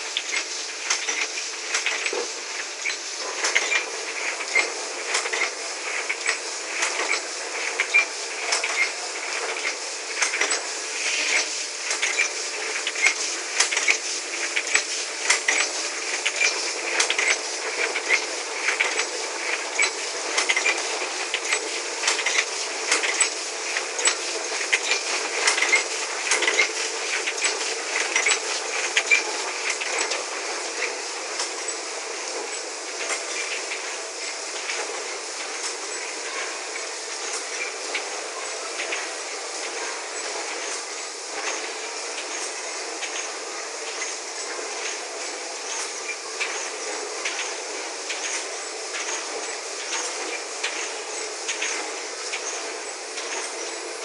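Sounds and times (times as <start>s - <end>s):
die-cutting machine clattering: 0.2s - 31.8s.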